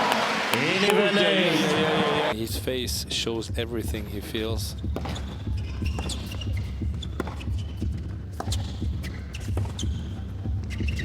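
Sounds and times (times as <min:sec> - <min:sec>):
sneaker squeaks: 0:04.8 - 0:11.0
racket striking tennis ball: 0:07.2 - 0:09.8.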